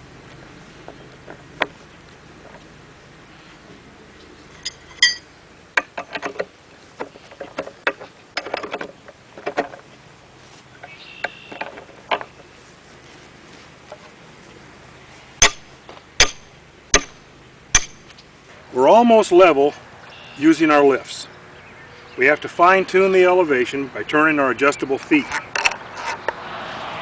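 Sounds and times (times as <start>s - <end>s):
ringing metal clink: 4.6s - 5.3s
metallic clanks and rattles: 4.6s - 6.5s
sharp metal strikes: 4.7s - 5.3s, 15.4s - 18.1s.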